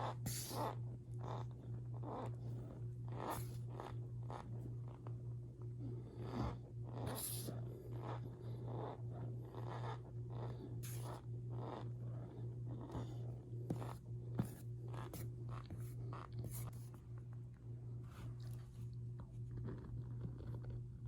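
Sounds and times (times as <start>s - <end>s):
steady low hum: 0.0s - 21.0s
fingers rubbing powder: 7.0s - 16.8s.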